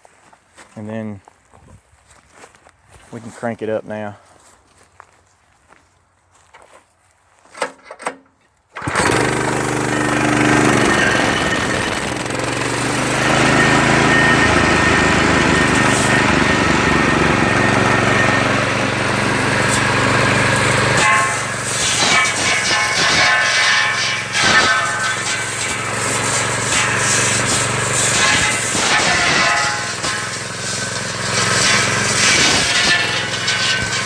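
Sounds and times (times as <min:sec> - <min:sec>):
saw motor running: 0:08.8 - 0:34.0.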